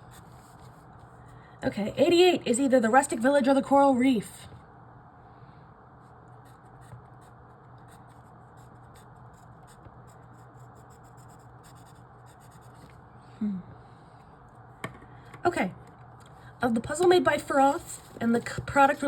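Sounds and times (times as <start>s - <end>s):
pen scratching on paper: 6.0s - 12.9s
person humming: 13.4s - 13.7s.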